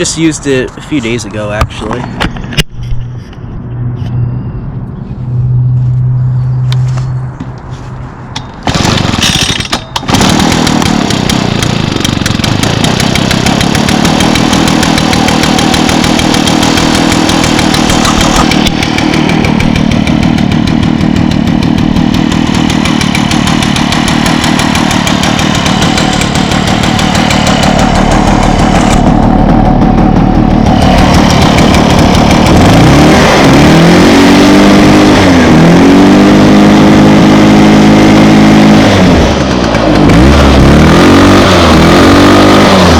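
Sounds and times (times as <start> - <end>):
leaf blower engine running: 8.6 - 42.9.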